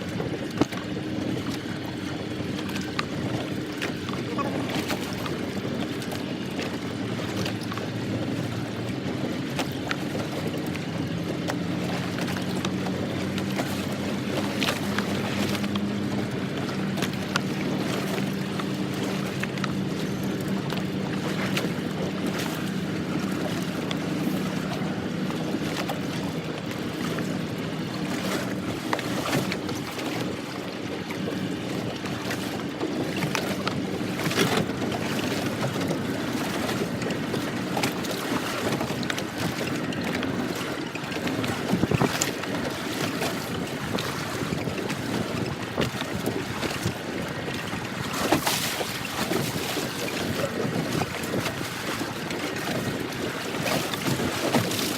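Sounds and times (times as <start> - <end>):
low engine hum: 0.0 - 54.9
water sounds: 0.0 - 54.9
wind noise: 28.2 - 54.9.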